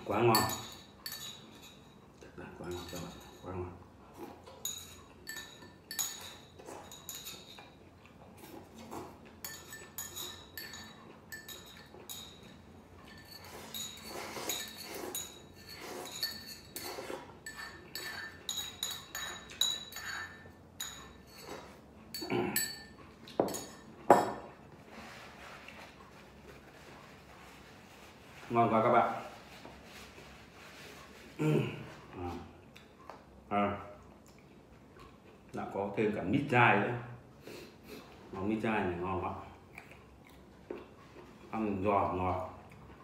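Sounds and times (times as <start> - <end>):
utensils clinking against dishes: 0.0 - 25.9.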